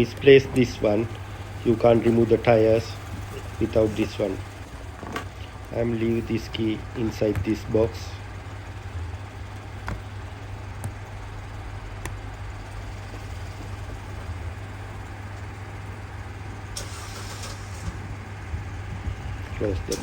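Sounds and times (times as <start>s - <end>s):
light clicks and knocks of handling: 0.0s - 5.8s, 9.6s - 11.1s
low mechanical hum: 0.0s - 20.0s.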